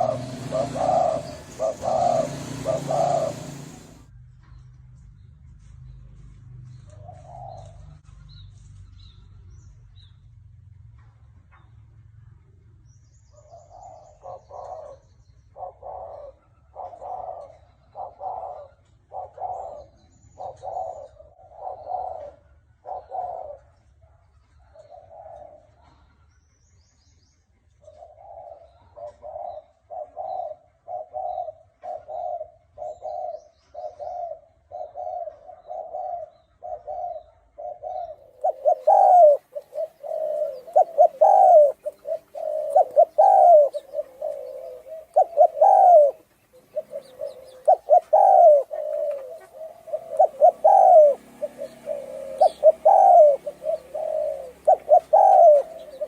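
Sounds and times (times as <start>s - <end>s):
dove calls with rising note: 0.0s - 4.1s, 6.7s - 8.1s, 13.6s - 23.7s, 27.9s - 56.0s
dove cooing: 0.0s - 4.1s, 7.0s - 7.9s, 13.7s - 23.8s, 24.6s - 25.9s, 27.8s - 56.0s.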